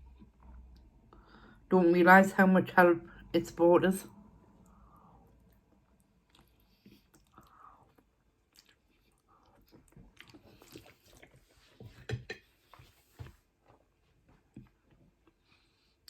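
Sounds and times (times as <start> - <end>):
person chewing food: 4.5 - 16.0.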